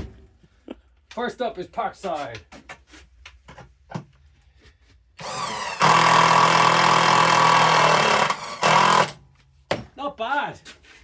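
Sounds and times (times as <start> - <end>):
impact driver motor whine: 5.2 - 9.2
impact driver hammering: 5.2 - 9.8.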